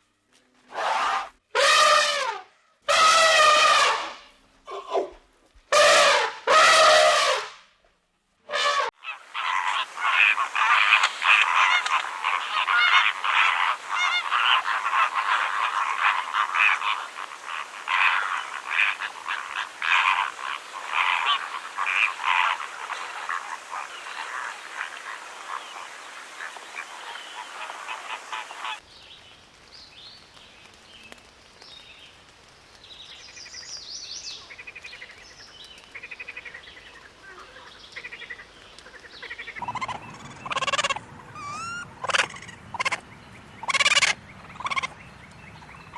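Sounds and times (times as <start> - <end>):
birds honking and calling: 9.0 - 28.8.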